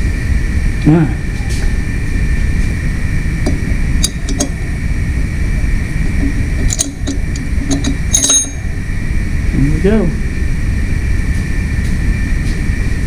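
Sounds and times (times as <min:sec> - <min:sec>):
low background hum: 0:00.0 - 0:13.0
metallic clinks of hand tools: 0:06.7 - 0:08.7.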